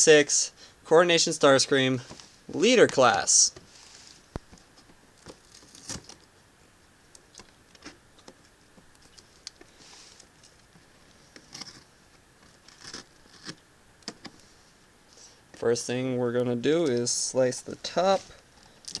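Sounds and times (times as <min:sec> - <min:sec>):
cardboard packaging being handled: 0:02.0 - 0:06.4, 0:07.4 - 0:14.6, 0:16.6 - 0:19.0.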